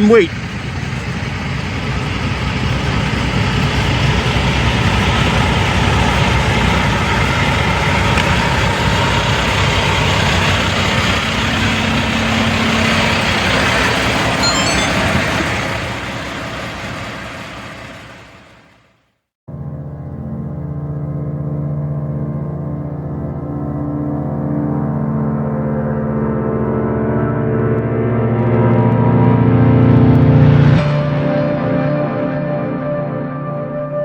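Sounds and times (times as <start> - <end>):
diesel trucks idling: 0.0 - 18.9.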